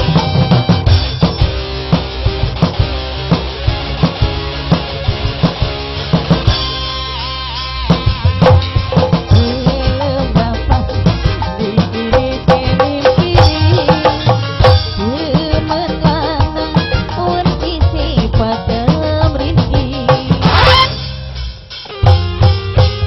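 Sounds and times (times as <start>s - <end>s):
live band music with drums and bass: 0.0s - 23.0s
wavering melody line: 20.4s - 21.0s.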